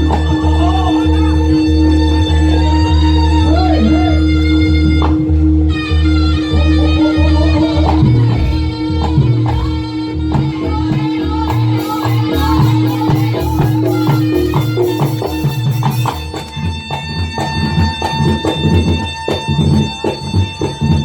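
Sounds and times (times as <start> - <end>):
band playing: 0.0 - 21.0
drum beats: 7.7 - 21.0.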